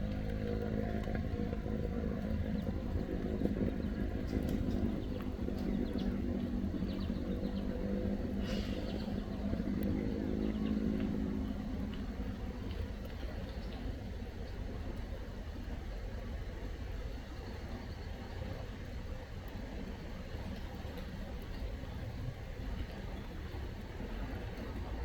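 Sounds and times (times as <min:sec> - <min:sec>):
vehicle engine running: 0:00.0 - 0:17.7.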